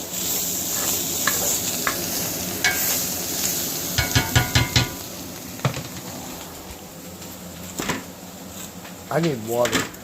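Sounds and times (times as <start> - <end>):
cooking hiss: 0.0 - 10.0
spoon knocking metal pot: 4.0 - 5.0.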